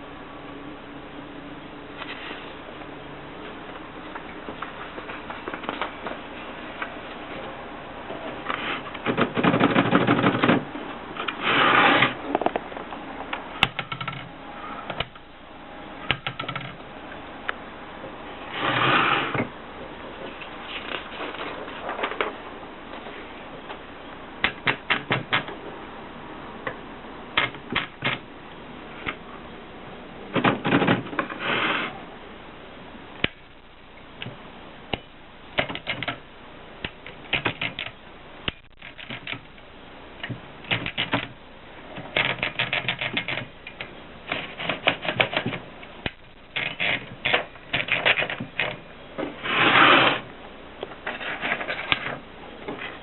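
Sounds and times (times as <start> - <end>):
typewriter rattling: 9.0 - 10.7, 37.0 - 37.9, 38.7 - 39.5, 40.7 - 41.4, 42.0 - 45.6.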